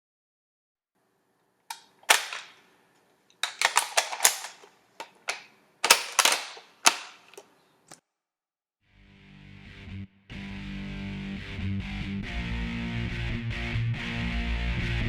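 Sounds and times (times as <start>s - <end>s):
airsoft gun mechanical clicks: 1.7s - 2.6s, 3.3s - 8.0s.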